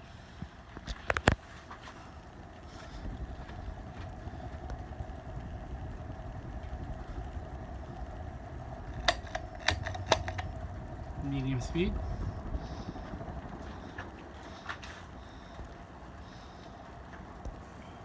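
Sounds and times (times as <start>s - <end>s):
ceiling fan motor hum: 0.0s - 18.0s.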